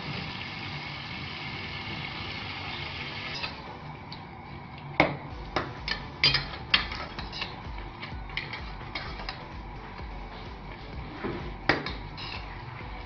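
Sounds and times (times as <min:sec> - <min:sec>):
frying hiss: 0:00.0 - 0:13.0
metal spoon clinking against pot: 0:05.9 - 0:09.5.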